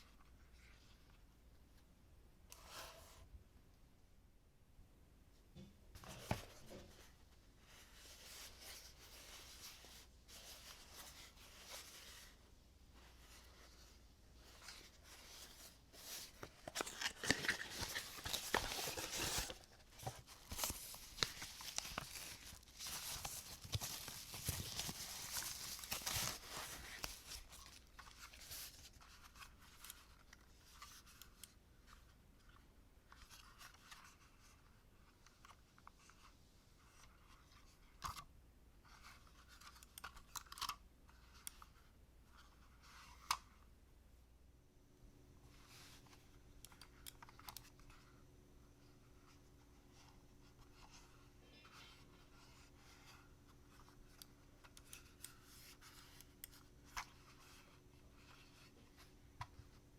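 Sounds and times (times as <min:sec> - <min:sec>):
paper and plastic rustling: 0:13.0 - 0:31.4.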